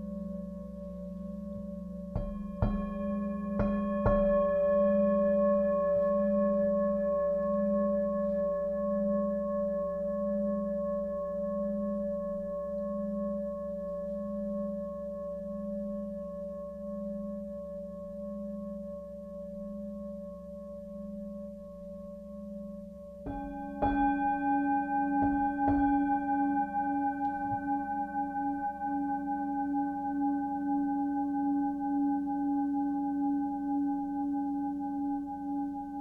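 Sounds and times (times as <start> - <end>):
bell-like metal tone ringing: 0.0 - 36.0.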